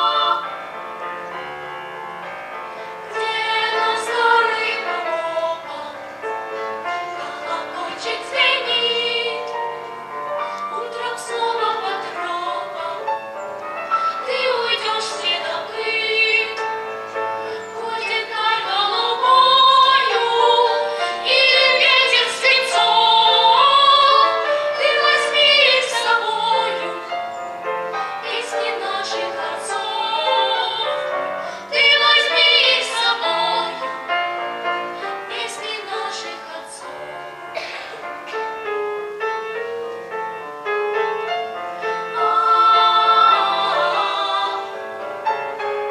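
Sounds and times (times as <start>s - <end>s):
children singing in unison: 0.0s - 0.5s, 3.1s - 6.0s, 7.2s - 9.6s, 10.7s - 13.2s, 14.0s - 16.8s, 17.4s - 27.4s, 28.2s - 34.0s, 35.2s - 38.0s, 41.9s - 45.0s
musical accompaniment: 0.0s - 45.9s.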